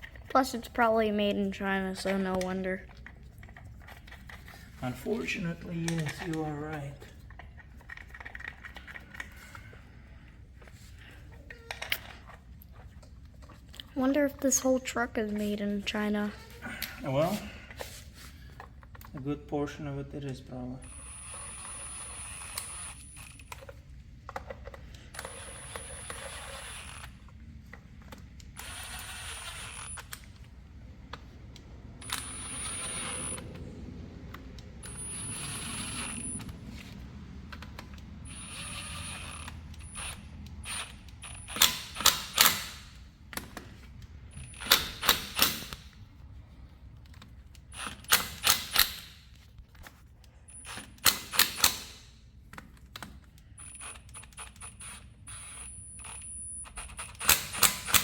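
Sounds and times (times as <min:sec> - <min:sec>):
power tool motor whirring: 0:20.9 - 0:23.5, 0:25.2 - 0:27.2, 0:28.6 - 0:30.1, 0:32.0 - 0:33.5, 0:34.8 - 0:36.8, 0:38.2 - 0:42.8
rattling impact bursts: 0:44.2 - 0:46.0.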